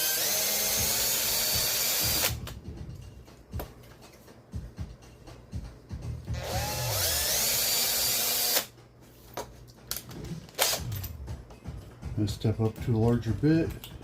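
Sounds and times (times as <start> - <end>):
power drill spinning: 0.0 - 2.4, 6.3 - 8.7.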